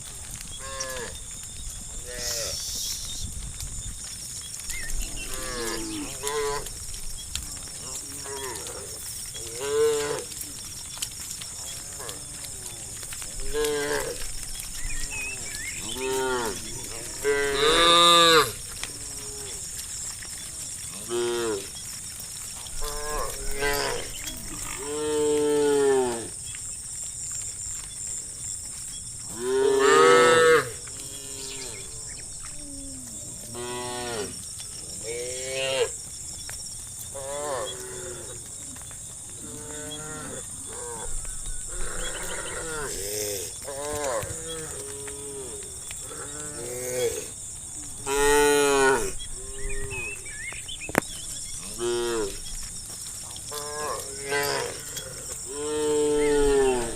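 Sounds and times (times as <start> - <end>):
steady high-pitched hiss: 0.0 - 56.9
cows mooing: 7.6 - 10.6, 11.6 - 19.9, 20.7 - 21.9, 22.7 - 26.4, 29.3 - 32.2, 48.0 - 50.2, 51.4 - 52.5, 53.4 - 56.9.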